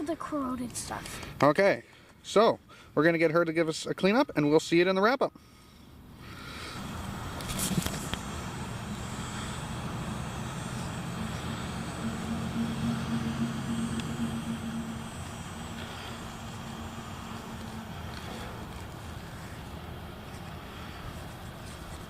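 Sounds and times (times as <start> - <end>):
distant engine droning: 6.2 - 22.0.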